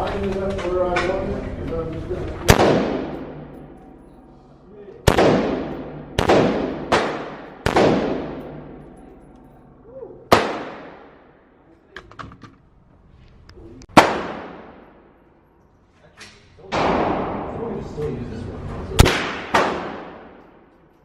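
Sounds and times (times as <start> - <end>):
gunshots with echo: 2.4 - 4.2, 5.0 - 9.3, 10.3 - 11.3, 13.9 - 15.2, 16.7 - 17.7, 19.0 - 20.7.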